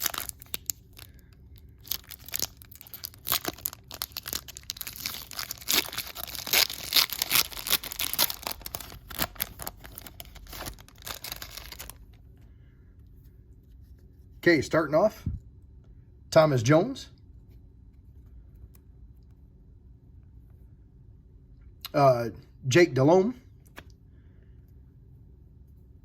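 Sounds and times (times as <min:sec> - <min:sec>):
wrapper tearing and crinkling: 0:00.0 - 0:12.1.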